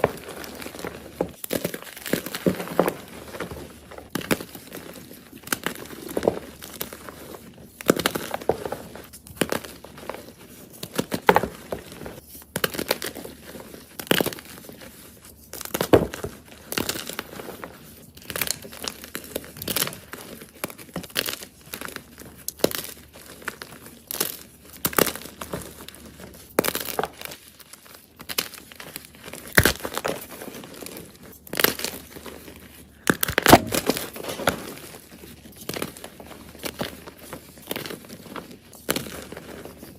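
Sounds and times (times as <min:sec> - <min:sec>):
chalk block crunching: 0:18.2 - 0:39.9.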